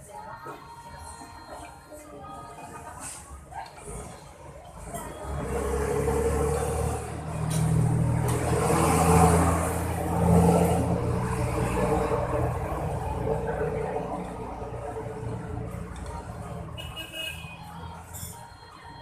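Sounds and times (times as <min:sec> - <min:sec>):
vehicle engine passing by: 0:03.8 - 0:17.0.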